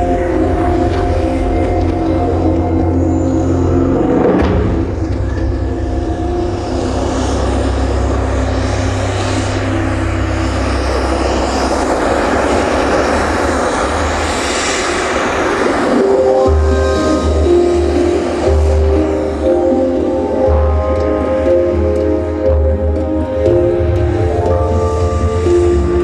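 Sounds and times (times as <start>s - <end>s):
low rumble: 0.0s - 26.0s
rushing engine-like roar: 0.0s - 26.0s
held music notes: 16.2s - 26.0s.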